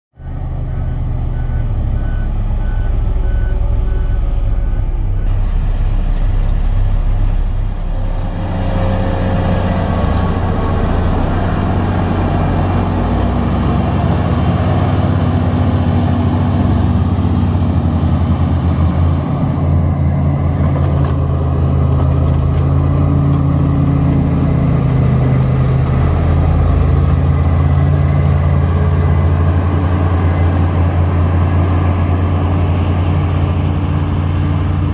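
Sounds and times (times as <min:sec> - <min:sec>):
reversing alarm beeping: 0:00.2 - 0:12.8
diesel engine running: 0:00.2 - 0:34.9.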